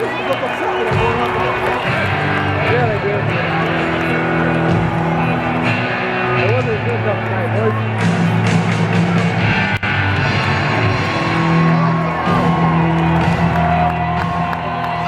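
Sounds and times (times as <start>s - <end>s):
crowd noise: 0.0s - 15.0s
rock music with guitar: 0.0s - 15.0s.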